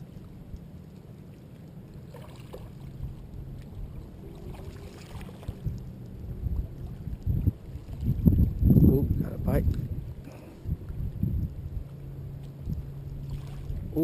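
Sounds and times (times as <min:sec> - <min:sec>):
wind buffeting microphone: 0:02.9 - 0:14.0.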